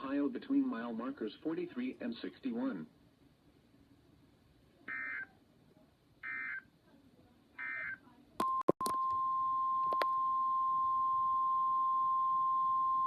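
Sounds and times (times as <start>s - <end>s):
digital data tones: 4.9s - 5.3s
steady warning alarm tone: 4.9s - 5.3s, 6.2s - 6.6s, 7.6s - 8.0s.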